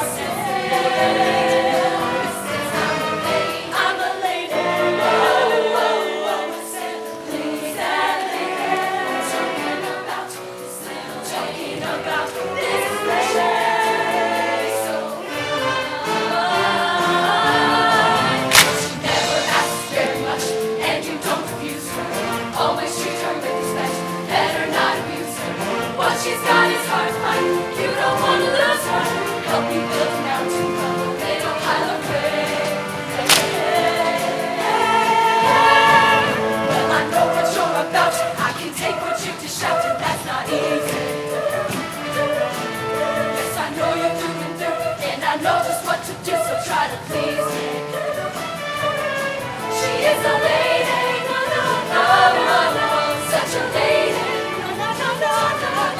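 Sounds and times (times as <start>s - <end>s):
choir singing with band: 0.0s - 55.9s
sharp percussive hit: 18.5s - 19.3s, 33.2s - 34.4s.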